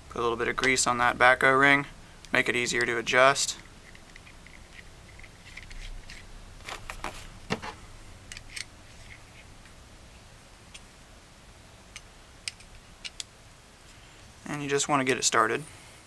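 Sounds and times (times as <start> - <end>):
small parts clicking and scraping: 2.7 - 7.2, 8.3 - 9.5, 11.9 - 13.3.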